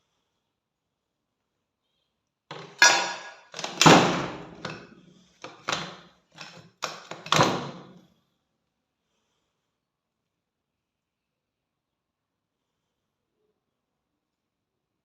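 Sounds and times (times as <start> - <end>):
metal rifle parts clanking: 2.5 - 4.9.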